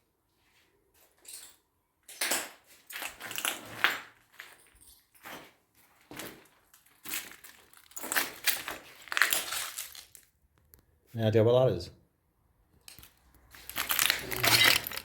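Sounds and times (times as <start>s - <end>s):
gritty debris crunching: 6.0s - 10.3s, 13.5s - 15.0s.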